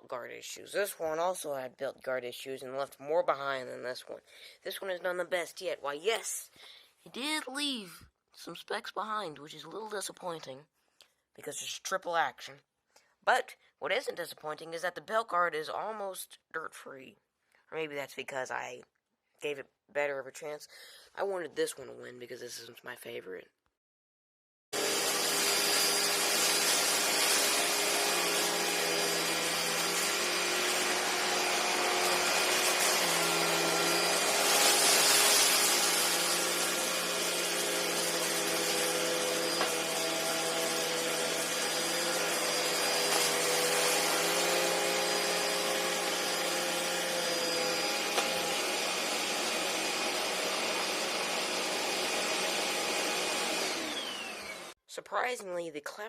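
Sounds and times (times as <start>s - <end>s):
vacuum cleaner motor whine: 24.8s - 54.8s.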